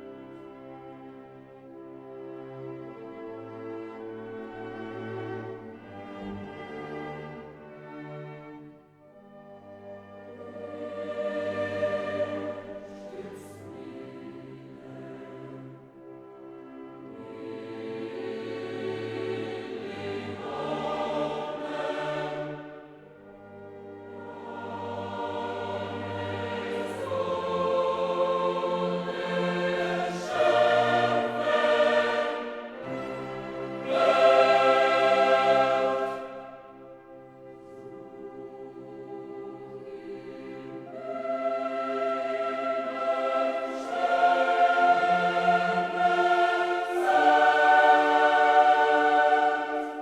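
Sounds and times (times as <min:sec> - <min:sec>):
choir singing held chords: 0:09.6 - 0:16.0, 0:17.0 - 0:50.0.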